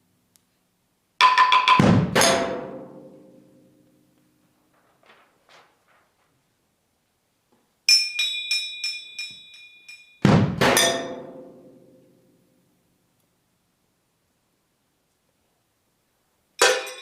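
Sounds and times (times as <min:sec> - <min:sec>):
ringing metal strikes: 0:01.2 - 0:03.7, 0:07.9 - 0:12.2, 0:16.6 - 0:17.0
deep drum thud: 0:01.8 - 0:02.4
metallic crash: 0:01.8 - 0:03.5, 0:16.6 - 0:17.0.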